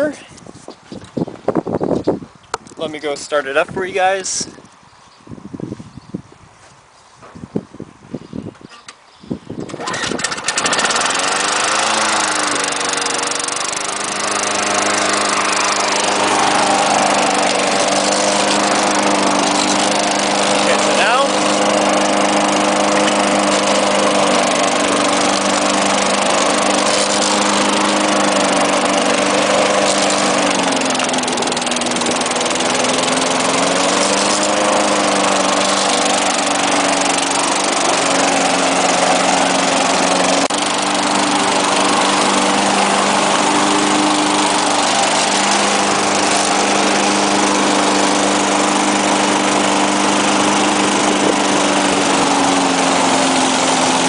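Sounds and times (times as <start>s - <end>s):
lawn mower engine running: 9.6s - 54.0s.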